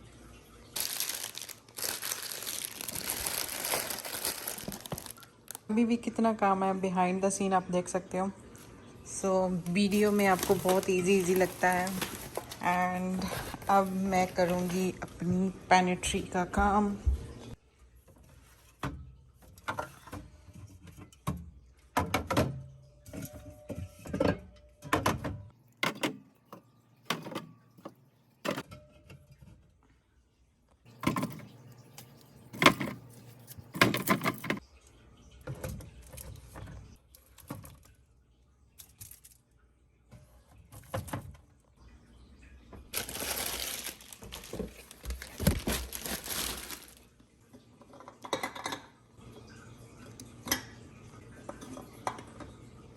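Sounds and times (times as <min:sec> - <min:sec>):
jars and containers clattering: 0:00.8 - 0:05.2, 0:09.7 - 0:15.0, 0:30.9 - 0:34.6, 0:42.9 - 0:47.0
packet rustling: 0:00.8 - 0:05.7, 0:09.6 - 0:14.9, 0:42.9 - 0:47.1.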